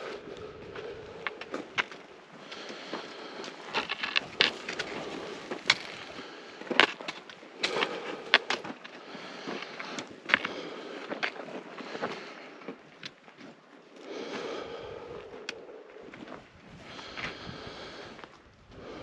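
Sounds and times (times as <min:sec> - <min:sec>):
footsteps crunching on gravel: 0:00.3 - 0:13.6.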